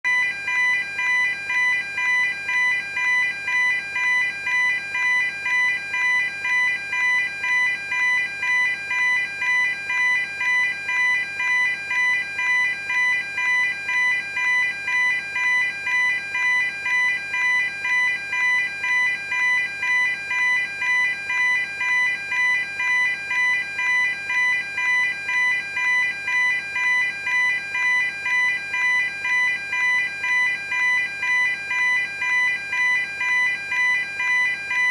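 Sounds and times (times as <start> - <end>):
level crossing alarm ringing: 0.0 - 34.9.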